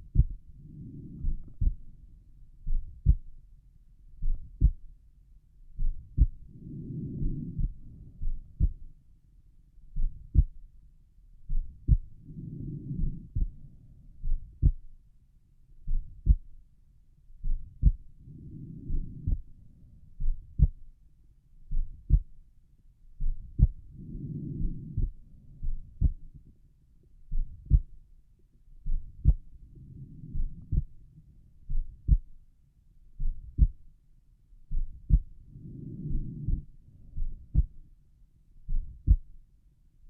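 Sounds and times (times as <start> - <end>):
heartbeat through stethoscope: 0.0 - 2.0, 2.6 - 3.4, 4.2 - 5.0, 5.8 - 9.0, 9.9 - 10.6, 11.4 - 15.0, 15.8 - 16.6, 17.4 - 19.6, 20.2 - 20.9, 21.7 - 22.4, 23.2 - 26.4, 27.3 - 28.0, 28.8 - 31.0, 31.7 - 32.4, 33.2 - 33.9, 34.7 - 37.9, 38.7 - 39.4.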